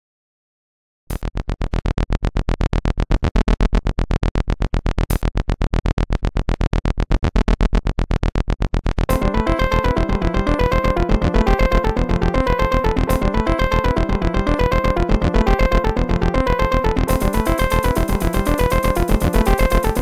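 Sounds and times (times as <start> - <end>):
fast synth pulse: 1.1 - 20.0
synth melody: 9.1 - 20.0.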